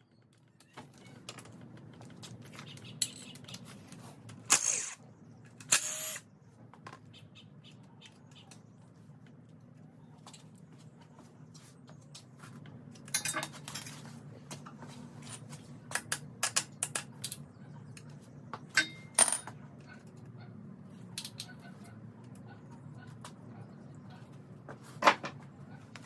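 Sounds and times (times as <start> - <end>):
metal parts clinking and clattering: 2.6 - 3.8, 13.0 - 14.2, 18.7 - 19.6, 21.1 - 21.6.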